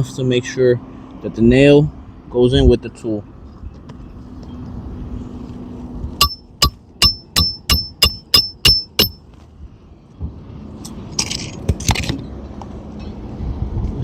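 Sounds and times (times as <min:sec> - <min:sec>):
hammer blows on metal tool: 0:06.2 - 0:09.2.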